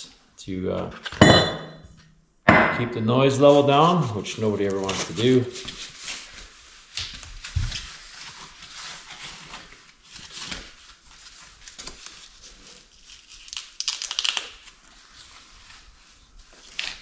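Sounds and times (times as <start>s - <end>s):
packing wrap crinkling: 3.6s - 17.0s.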